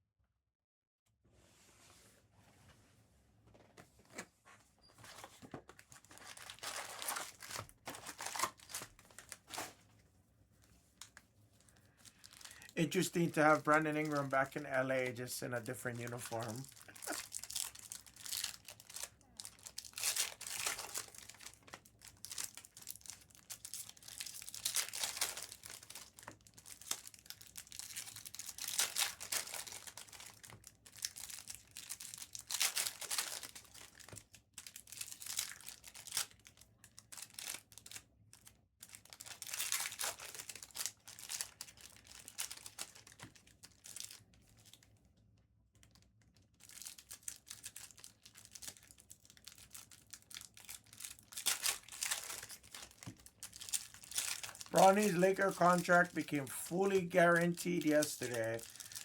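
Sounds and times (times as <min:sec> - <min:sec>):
card pack wrappers crinkling and tearing: 0:05.0 - 0:09.8, 0:11.0 - 0:44.9, 0:45.8 - 0:59.0
cards being handled: 0:54.2 - 0:58.8.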